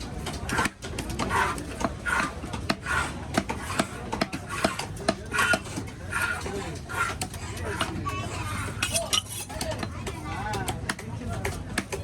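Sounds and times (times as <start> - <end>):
knife scraping fish: 0.5 - 8.0, 8.6 - 9.6.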